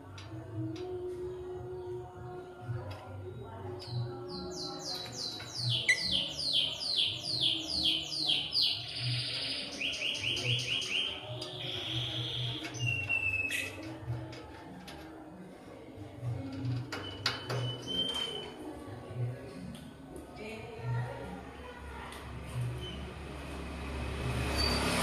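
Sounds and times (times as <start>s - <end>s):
pet bird chirping and trilling: 4.6s - 13.8s.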